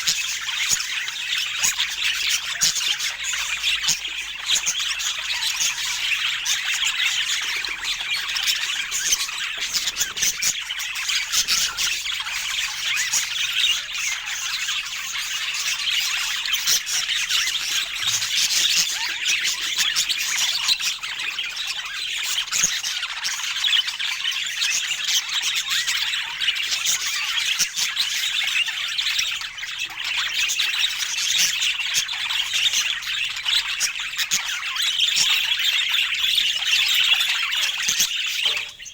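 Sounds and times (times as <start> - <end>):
budgerigars chattering and squawking: 0.0 - 38.9.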